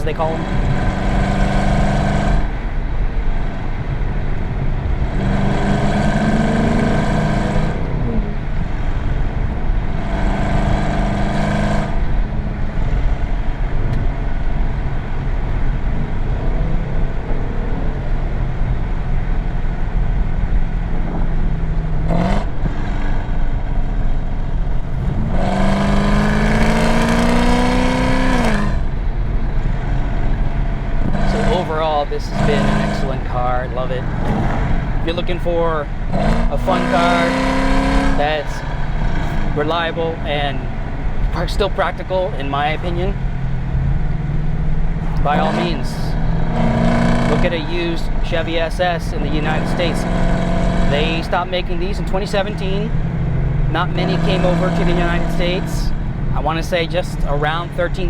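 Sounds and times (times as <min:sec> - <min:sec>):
car engine rumbling: 0:00.0 - 0:58.0
engine rev blip: 0:24.8 - 0:58.0.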